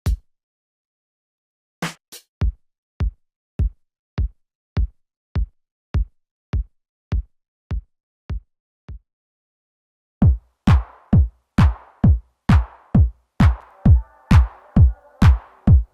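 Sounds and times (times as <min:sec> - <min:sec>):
drum machine kick drum: 0:00.0 - 0:00.3, 0:01.9 - 0:09.1, 0:10.2 - 0:15.9.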